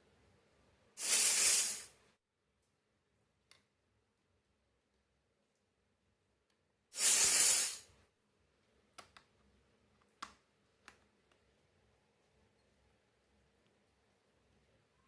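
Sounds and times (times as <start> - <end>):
burst of hissing noise: 1.0 - 2.0, 6.9 - 7.9.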